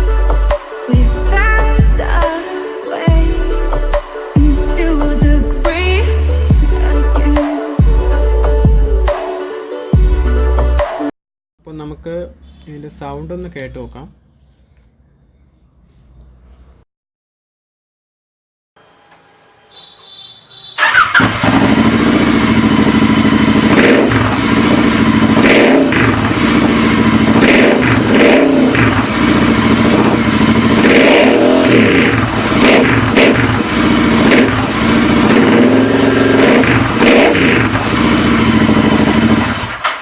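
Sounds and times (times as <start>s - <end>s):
motorcycle engine revving and idling: 20.6s - 40.0s.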